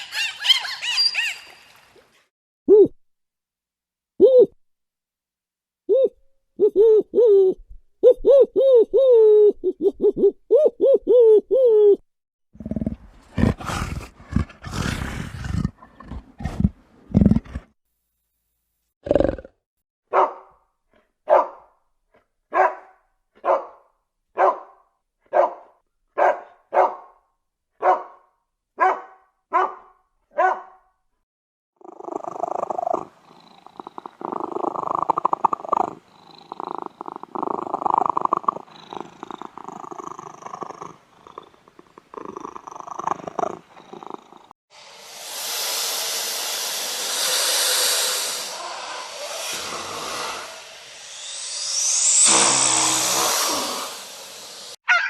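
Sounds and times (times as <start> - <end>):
animal rough purring: 12.6 - 17.8, 19.0 - 19.6, 31.8 - 44.5.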